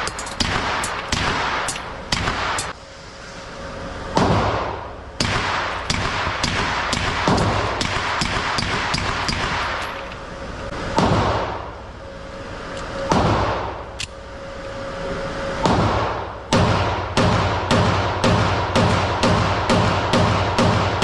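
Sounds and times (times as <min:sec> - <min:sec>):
gunshots with ringing tail: 0:00.0 - 0:02.8, 0:04.2 - 0:09.9, 0:15.6 - 0:21.0
louder deeper gunshots: 0:00.4 - 0:02.8, 0:04.2 - 0:09.8, 0:15.6 - 0:21.0.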